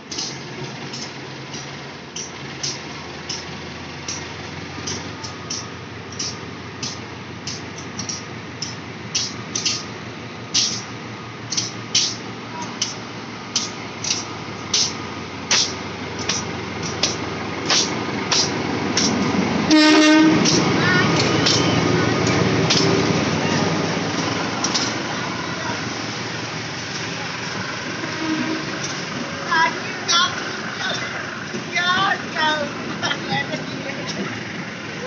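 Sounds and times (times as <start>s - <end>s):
locomotive horn blasts: 19.7s - 20.5s, 28.0s - 28.8s.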